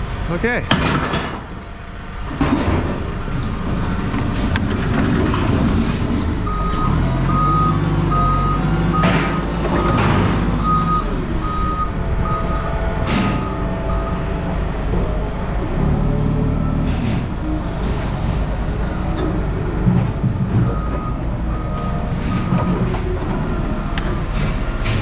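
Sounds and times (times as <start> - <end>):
engine rumbling: 0.0 - 25.0
reversing alarm beeping: 6.2 - 25.0.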